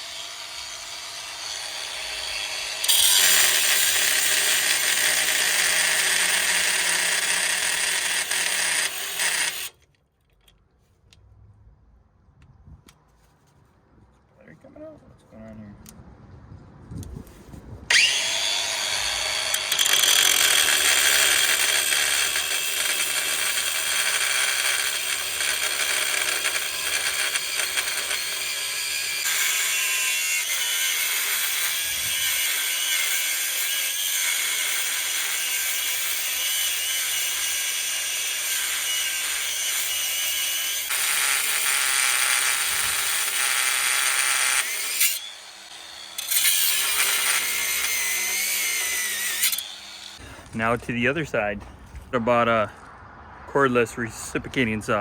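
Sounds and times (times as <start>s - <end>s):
angle grinder cutting steel: 0.0s - 9.8s, 17.9s - 50.2s.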